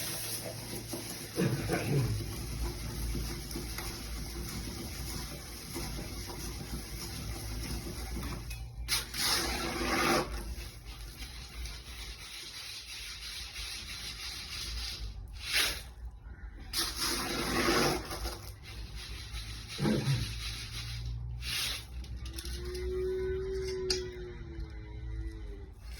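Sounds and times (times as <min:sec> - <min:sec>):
water pouring and splashing: 0:00.0 - 0:12.3.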